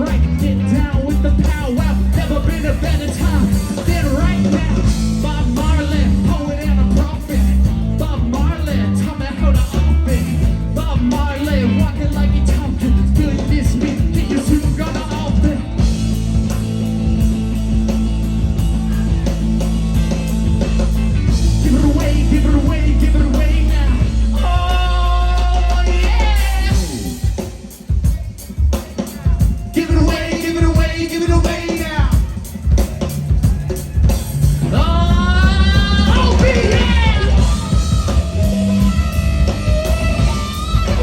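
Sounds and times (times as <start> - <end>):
live rock band playing: 0.0 - 41.0.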